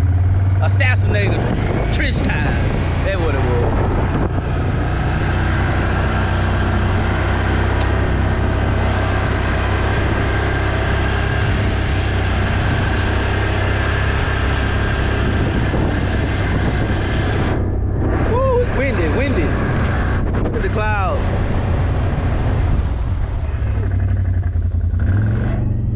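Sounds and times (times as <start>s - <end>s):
quad bike engine drone: 0.0s - 25.9s.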